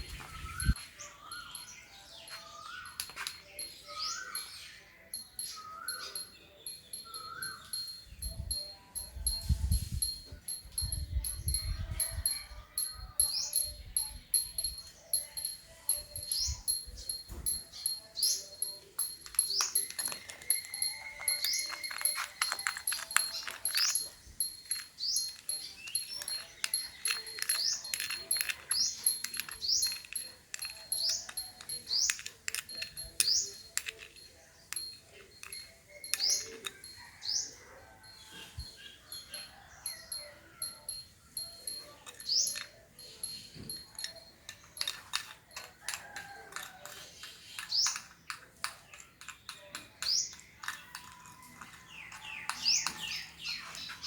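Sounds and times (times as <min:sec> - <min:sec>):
utensil clicking against a cup: 0:18.2 - 0:36.9, 0:43.9 - 0:54.0.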